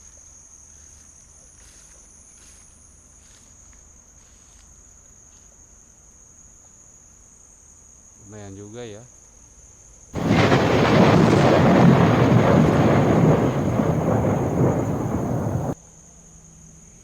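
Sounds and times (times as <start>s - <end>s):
loud thunder-like rumble: 10.2s - 15.8s.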